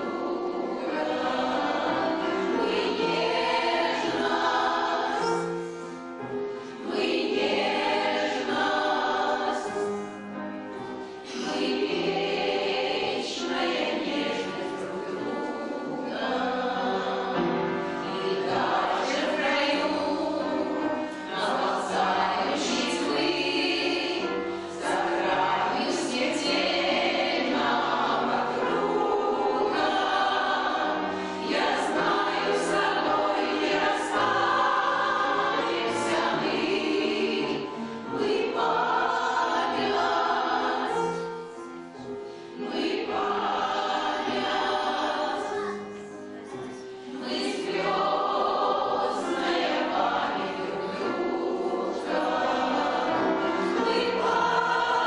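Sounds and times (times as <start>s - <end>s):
choir singing: 0.0s - 55.0s.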